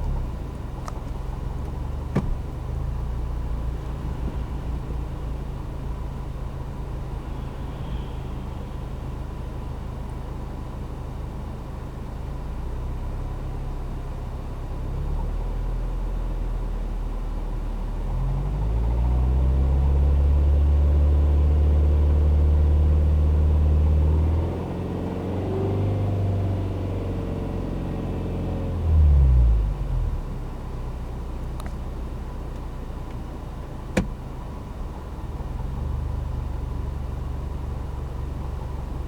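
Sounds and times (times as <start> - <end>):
light rattling knock: 2.1 - 2.5.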